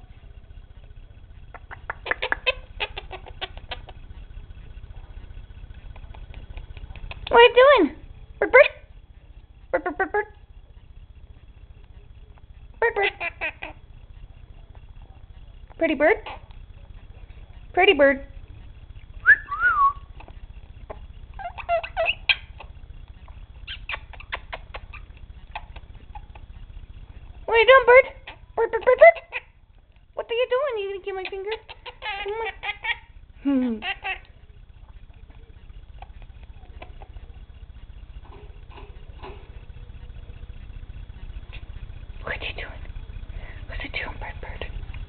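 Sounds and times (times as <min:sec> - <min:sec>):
parrot clucking: 0:01.4 - 0:07.5, 0:12.6 - 0:14.9, 0:18.6 - 0:29.8, 0:30.4 - 0:42.1
parrot clicks: 0:01.5 - 0:04.0
parrot whistling call: 0:19.2 - 0:20.1, 0:23.6 - 0:25.1.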